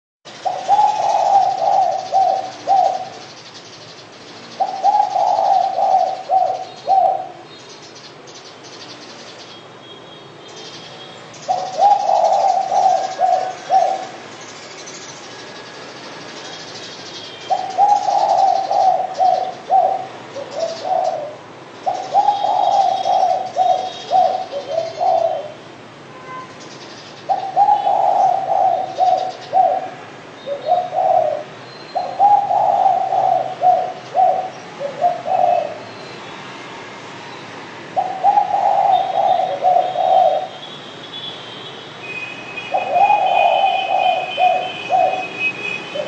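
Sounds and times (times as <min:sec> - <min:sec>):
dove cooing: 0:00.3 - 0:03.4, 0:04.4 - 0:07.5, 0:11.4 - 0:14.4, 0:17.4 - 0:25.6, 0:27.2 - 0:35.9, 0:37.9 - 0:40.6, 0:42.7 - 0:46.0
small birds chirping: 0:00.3 - 0:25.6, 0:26.5 - 0:36.5.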